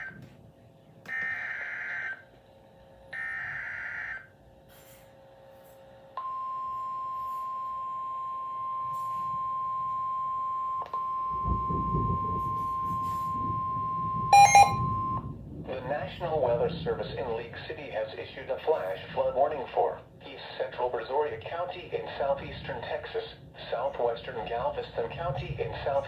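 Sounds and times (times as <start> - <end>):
steady single-pitch attention tone: 10.6 - 15.2
buzzing data tones: 11.0 - 15.2.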